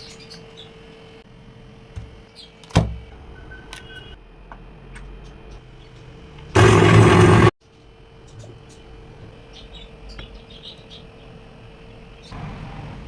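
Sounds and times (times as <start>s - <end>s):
steady low hum: 6.6s - 7.5s.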